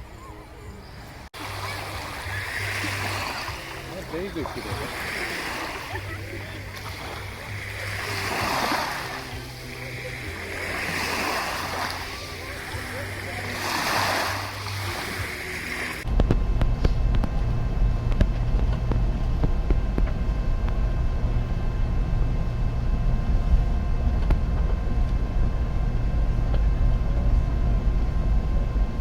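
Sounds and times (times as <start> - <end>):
faint steady whine: 0.0 - 29.0
train rumbling on rails: 16.0 - 29.0.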